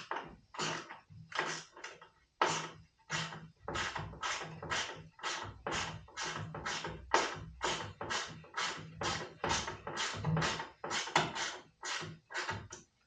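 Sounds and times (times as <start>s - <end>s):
hand tool rasping strokes: 0.0s - 12.8s.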